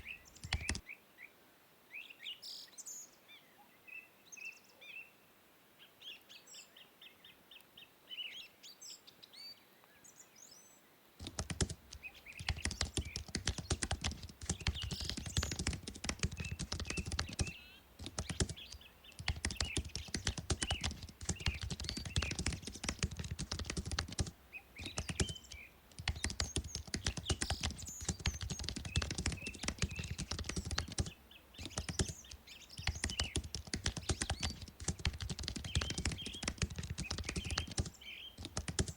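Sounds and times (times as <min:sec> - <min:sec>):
fast typing on keyboard: 0:00.0 - 0:00.8, 0:11.2 - 0:38.9
birds chirping: 0:00.0 - 0:01.0, 0:11.2 - 0:38.9.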